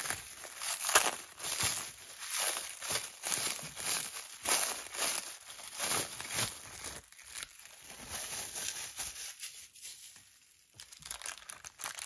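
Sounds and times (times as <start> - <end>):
packaging torn and crinkled: 0.0 - 12.0.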